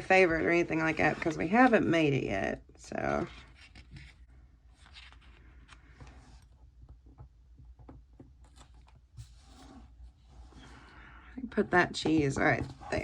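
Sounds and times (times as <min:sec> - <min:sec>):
paper sticker sheets rustling: 0:03.1 - 0:06.5.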